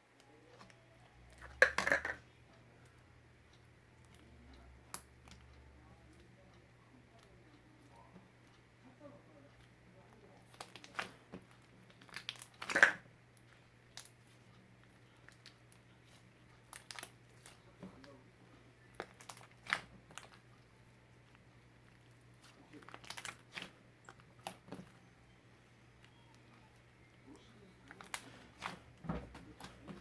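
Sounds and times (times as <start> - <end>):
crinkling and rustling: 10.3 - 18.2, 18.9 - 20.6, 21.2 - 25.0, 27.8 - 30.0.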